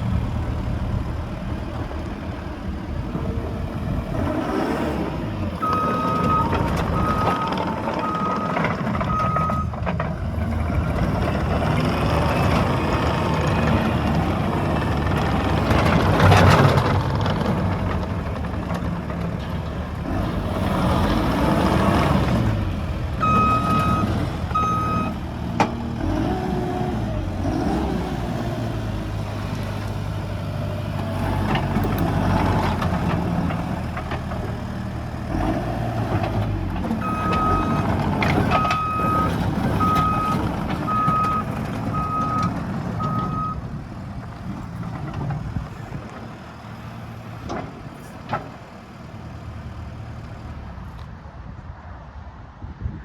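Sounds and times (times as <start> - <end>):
diesel loader engine: 0.0 - 53.0
reverse alarm beeps: 5.6 - 9.7, 23.2 - 25.2.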